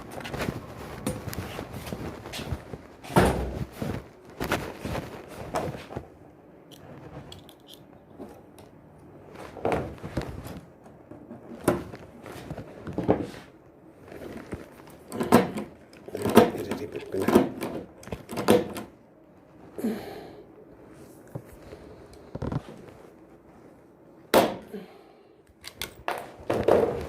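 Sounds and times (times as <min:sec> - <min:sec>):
scraping and handling noise: 0:00.0 - 0:24.3, 0:25.5 - 0:27.0
knocks and clatters of hand work: 0:14.5 - 0:18.9.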